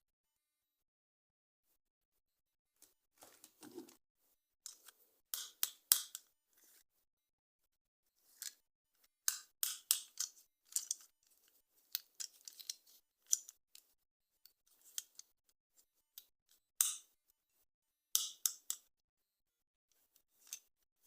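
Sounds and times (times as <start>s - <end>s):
plastic and cardboard crackling: 3.2s - 3.9s.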